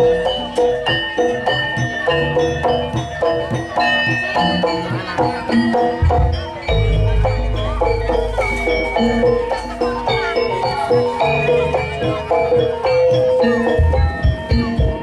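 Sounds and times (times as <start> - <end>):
pitched metal percussion: 0.0 - 15.0
low drumming: 5.9 - 10.6.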